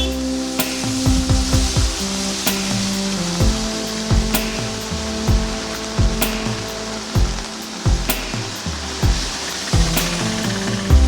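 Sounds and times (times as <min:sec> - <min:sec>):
held bass notes: 0:00.0 - 0:11.0
steady hiss: 0:00.0 - 0:11.0
deep drum hits: 0:00.8 - 0:02.0, 0:03.4 - 0:04.7, 0:05.3 - 0:06.6, 0:07.2 - 0:11.0.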